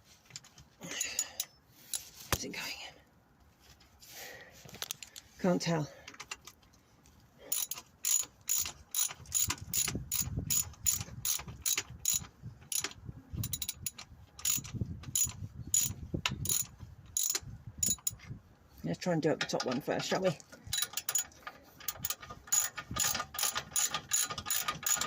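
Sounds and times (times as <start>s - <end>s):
ratchet clicking: 7.5s - 18.2s, 20.7s - 25.0s.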